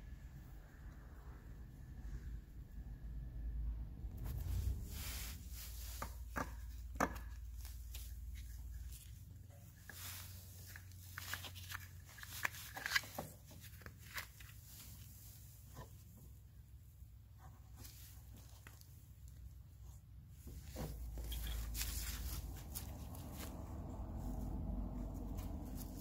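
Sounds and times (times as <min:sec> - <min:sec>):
low rumble: 0:00.0 - 0:05.9, 0:21.5 - 0:26.0.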